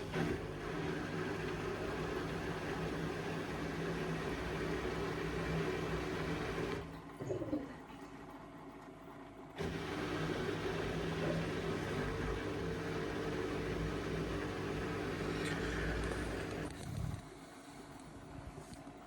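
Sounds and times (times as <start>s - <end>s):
washing machine drum humming: 0.0s - 7.6s, 9.6s - 16.7s.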